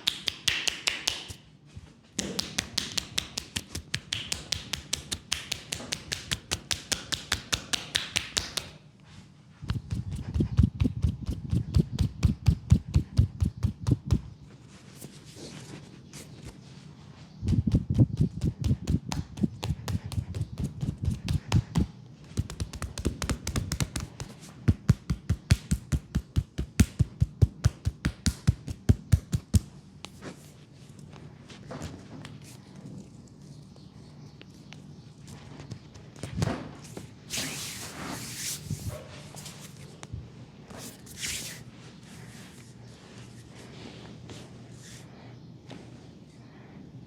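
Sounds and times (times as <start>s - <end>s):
massage gun tapping on leg: 2.2s - 8.8s, 9.7s - 14.3s, 17.5s - 29.7s
deep dull thumps: 9.6s - 14.4s, 17.4s - 29.6s.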